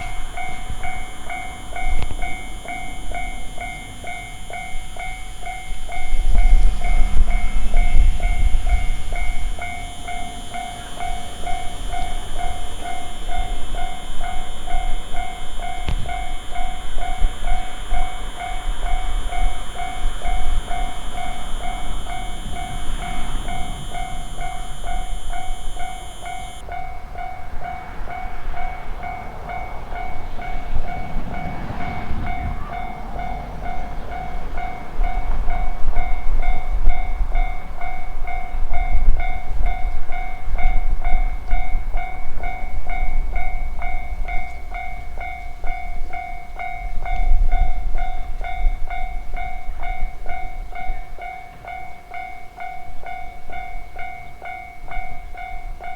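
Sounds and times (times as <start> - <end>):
steady high whine: 0.0 - 38.4
electric train rumbling: 0.0 - 55.9
railroad crossing alarm ringing: 0.0 - 55.9.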